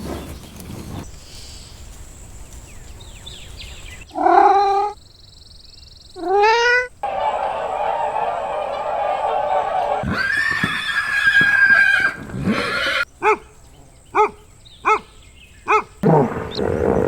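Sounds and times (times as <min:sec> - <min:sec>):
zebra whinny-like call: 0:07.0 - 0:13.0
zebra barking yelps: 0:07.0 - 0:13.5, 0:14.2 - 0:15.1, 0:15.7 - 0:16.0.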